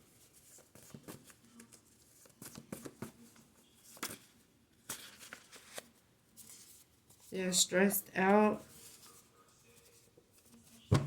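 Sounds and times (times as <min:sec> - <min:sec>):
cards rustling and clicking: 0:00.2 - 0:07.3.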